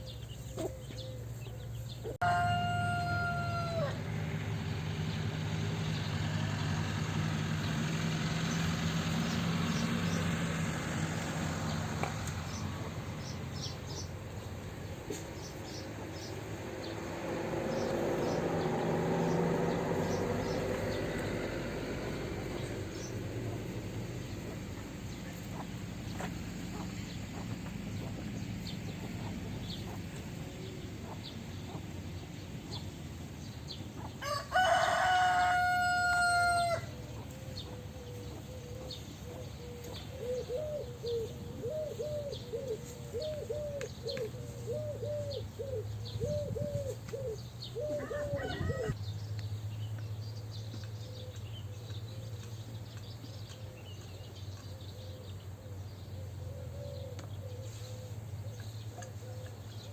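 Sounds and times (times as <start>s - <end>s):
chicken clucking: 0.4s - 1.0s, 24.4s - 30.2s
rooster crowing: 2.1s - 4.1s, 34.2s - 37.0s, 47.9s - 49.0s.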